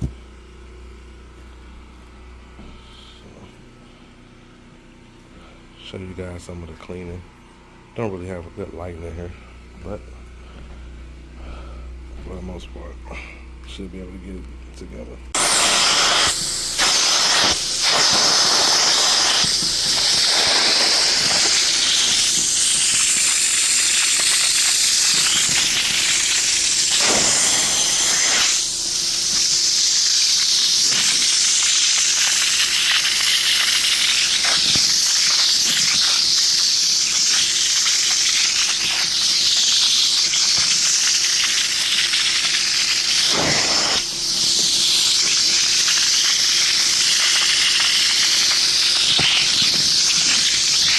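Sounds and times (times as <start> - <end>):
motor hum: 0.0 - 50.9
upholstery cleaner spraying hiss: 15.4 - 50.9.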